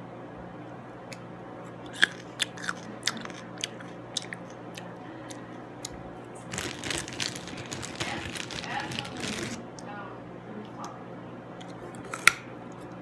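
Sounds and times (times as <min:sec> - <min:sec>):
crunchy food being chewed: 0:01.1 - 0:09.6, 0:11.6 - 0:13.0.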